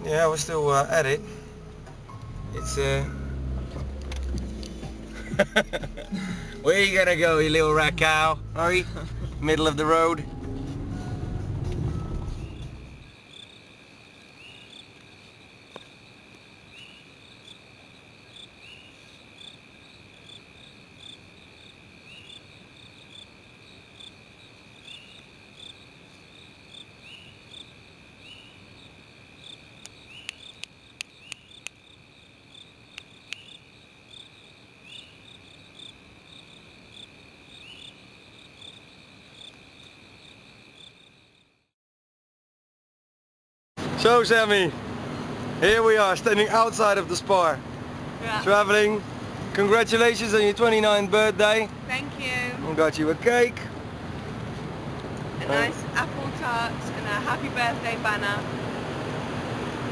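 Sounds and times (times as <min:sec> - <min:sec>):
insect chirping call: 0:09.9 - 0:41.7.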